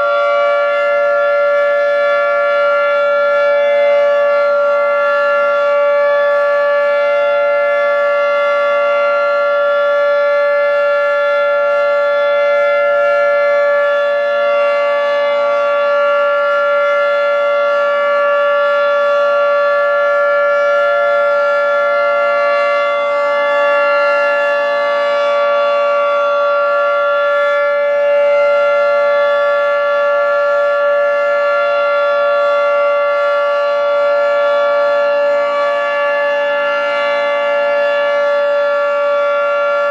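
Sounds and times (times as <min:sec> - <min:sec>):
two-tone warning siren: 0:00.0 - 0:39.9.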